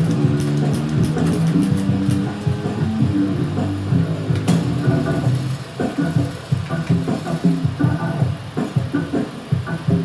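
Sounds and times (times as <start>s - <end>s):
band playing with steady beat: 0.0s - 10.0s.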